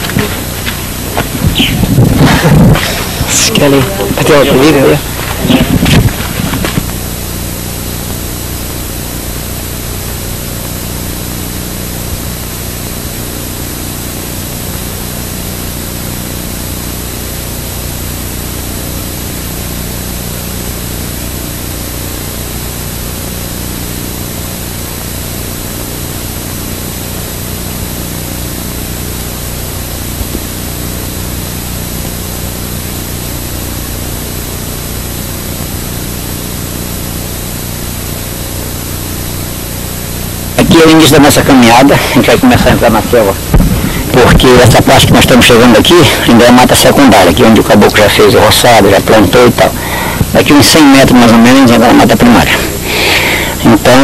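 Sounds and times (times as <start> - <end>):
vehicle engine running: 0.0 - 13.9
rushing noise: 39.0 - 54.0.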